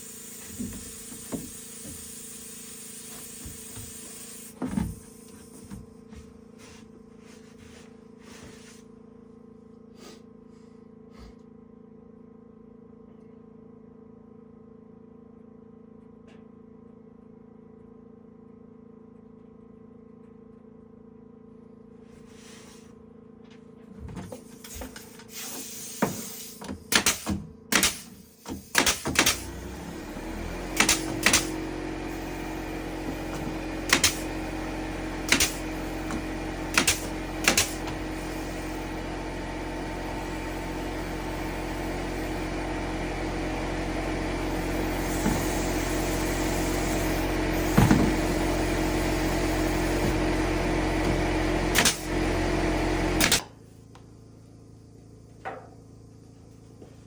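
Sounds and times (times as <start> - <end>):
machine humming: 29.4 - 53.4.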